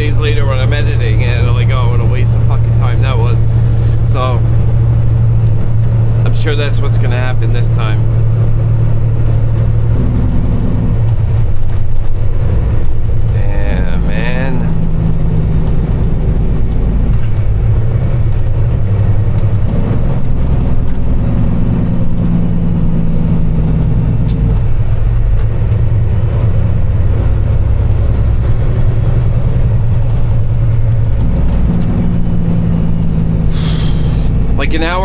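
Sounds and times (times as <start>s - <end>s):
diesel truck engine running: 0.0s - 35.0s.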